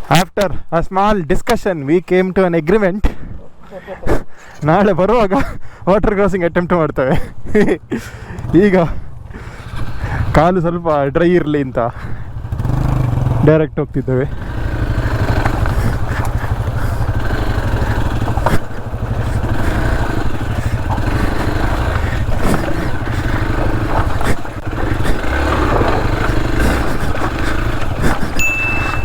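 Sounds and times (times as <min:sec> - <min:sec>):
motorcycle engine running: 0:07.9 - 0:29.0.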